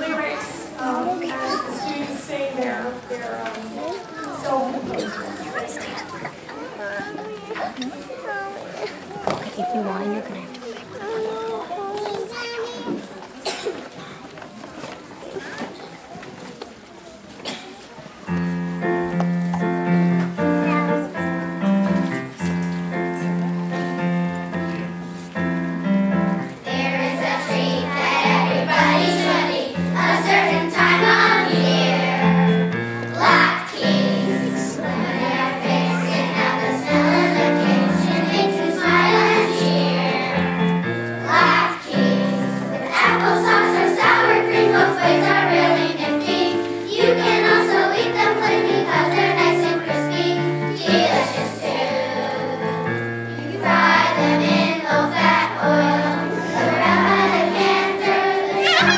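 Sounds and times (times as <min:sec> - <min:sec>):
children's choir singing: 0:00.0 - 0:03.7, 0:20.9 - 0:58.9
keyboard accompaniment: 0:18.3 - 0:58.9.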